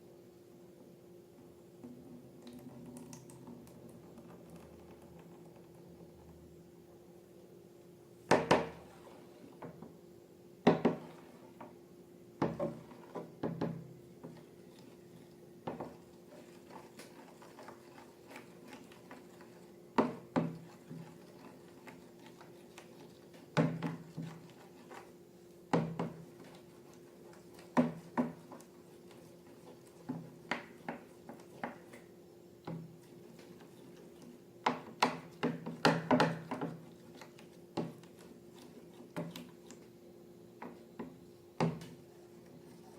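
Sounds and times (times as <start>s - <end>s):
faint steady hum: 0.0s - 42.9s
hard objects tapping and clicking: 34.6s - 36.8s.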